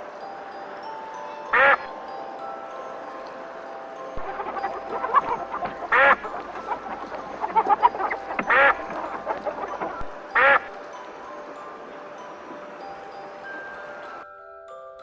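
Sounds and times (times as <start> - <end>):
loud duck quacks: 1.6 - 1.9, 4.2 - 10.7
soft rapid quacking chatter: 1.6 - 1.9, 4.2 - 10.8.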